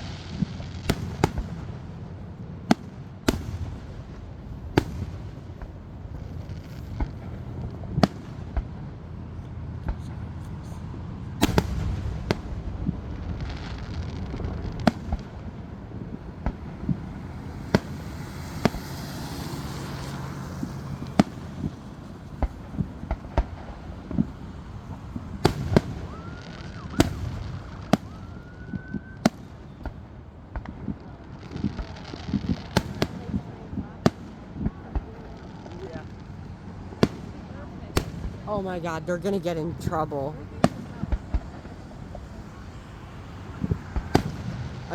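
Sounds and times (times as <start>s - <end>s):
firework bangs: 0.0s - 44.9s
rising firework whistles: 16.8s - 33.1s.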